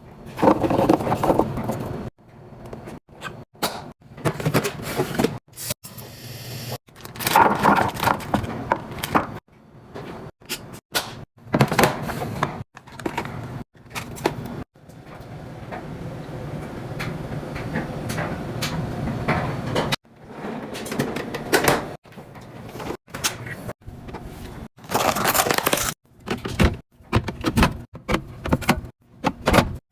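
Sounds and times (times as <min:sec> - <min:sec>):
containers being handled: 0:11.6 - 0:14.5, 0:24.8 - 0:26.6.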